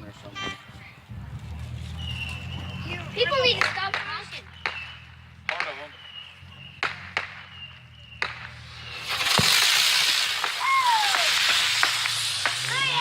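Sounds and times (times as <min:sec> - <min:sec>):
firework fountain hissing: 0:02.8 - 0:13.0.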